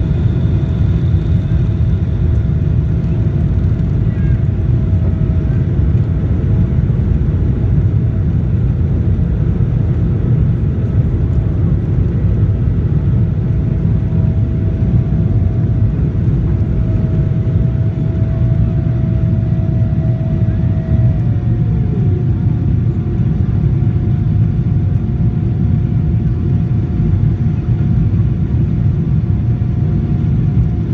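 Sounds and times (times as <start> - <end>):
faint steady whine: 0.0 - 30.9
jet engine cabin rumble: 0.0 - 30.9.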